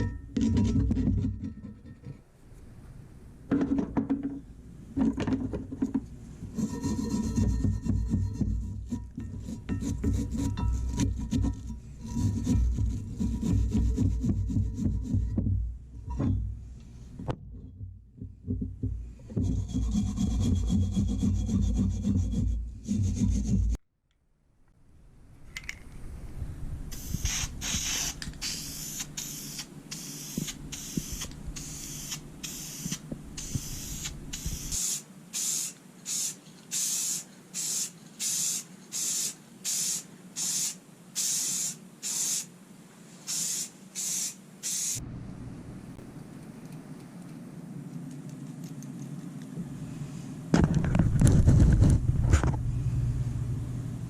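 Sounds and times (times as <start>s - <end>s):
heavy rubbing on steel: 6.4s - 15.5s, 19.1s - 23.8s
file scraping strokes on steel: 6.5s - 15.3s, 19.3s - 23.8s.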